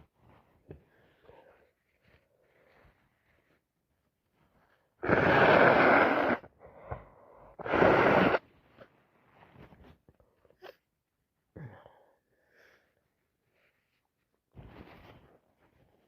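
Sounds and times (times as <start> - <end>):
breath: 0.7 - 3.6, 6.4 - 8.4, 11.6 - 14.0
person blowing nose: 5.0 - 6.5, 7.6 - 8.4.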